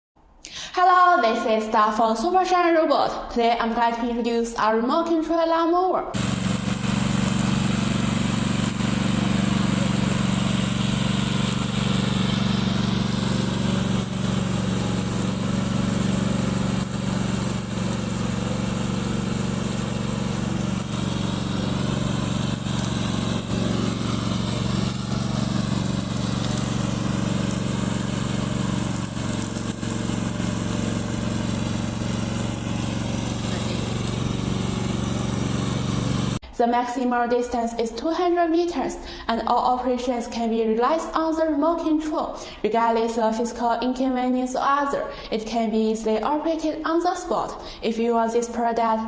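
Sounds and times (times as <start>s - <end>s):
gasoline engine running fast: 6.2s - 36.4s.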